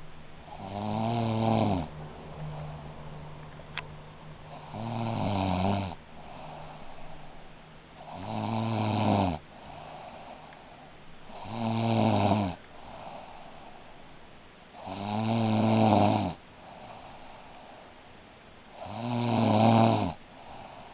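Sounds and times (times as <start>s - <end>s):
breathy breathing: 0.0s - 8.3s, 9.4s - 11.6s, 12.6s - 14.2s, 16.6s - 18.2s, 20.2s - 20.9s
woman snoring: 0.5s - 2.9s, 4.5s - 6.9s, 8.0s - 10.5s, 11.3s - 13.8s, 14.8s - 17.3s, 18.8s - 20.9s.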